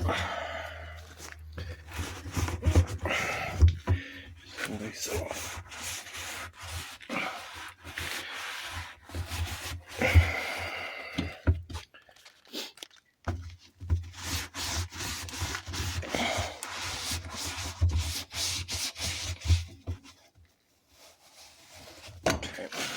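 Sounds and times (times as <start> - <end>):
scrubbing rubber door seal: 1.6 - 11.8.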